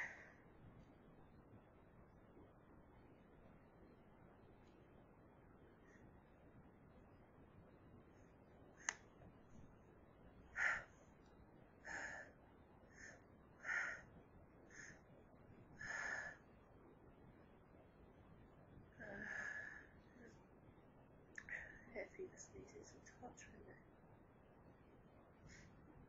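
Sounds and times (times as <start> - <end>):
person gasping breaths: 11.8 - 14.1, 15.8 - 16.5, 19.0 - 20.0.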